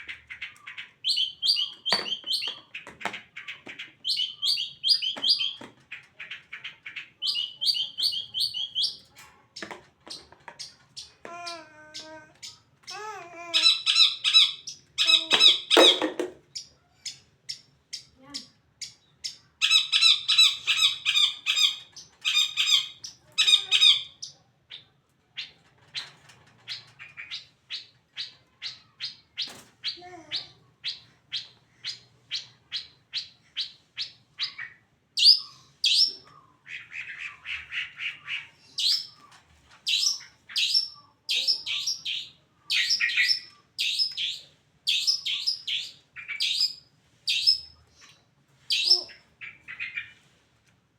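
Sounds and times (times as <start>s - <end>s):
songbird harsh calls: 10.6s - 24.4s.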